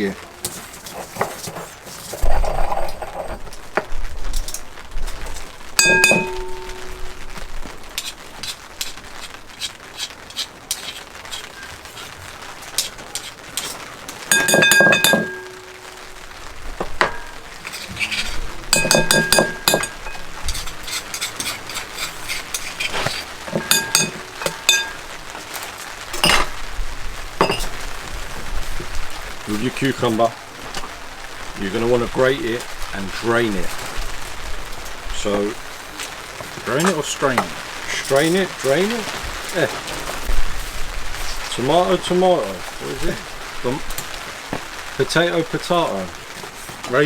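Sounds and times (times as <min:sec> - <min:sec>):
pestle pounding in mortar: 0:14.3 - 0:15.6, 0:16.8 - 0:25.0.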